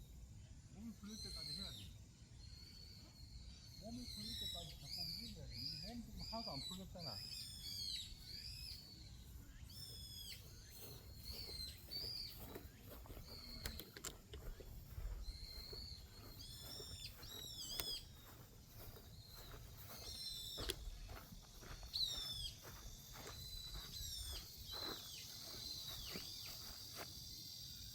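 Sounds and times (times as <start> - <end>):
birds chirping: 0.3 - 27.9
sharp clicks: 13.5 - 14.6, 17.6 - 18.0, 20.6 - 20.8.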